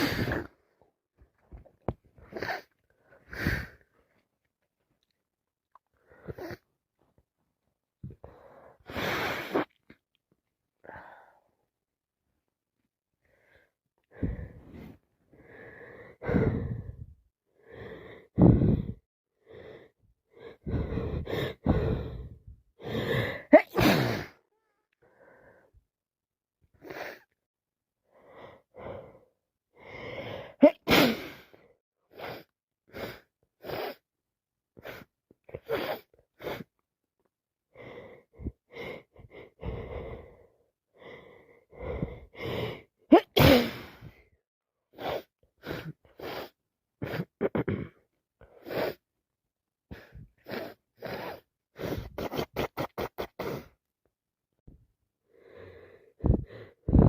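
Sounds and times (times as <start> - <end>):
woman sneezing: 0.0 - 0.5, 23.5 - 24.4, 30.6 - 31.3, 43.1 - 44.0
gasping breaths: 13.3 - 24.4, 37.7 - 42.9
sniffs: 48.6 - 49.0, 50.0 - 53.8.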